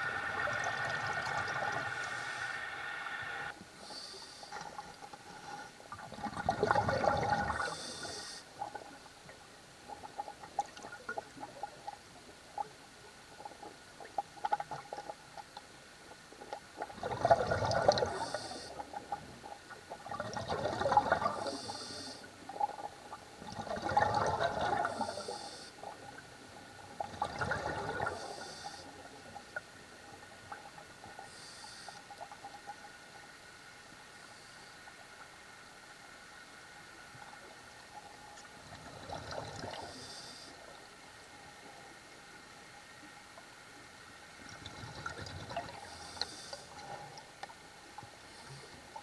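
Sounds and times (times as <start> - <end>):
exhaled bubbles underwater: 0.0 - 3.5, 5.9 - 8.1, 16.8 - 31.1, 38.5 - 40.2, 44.4 - 47.3.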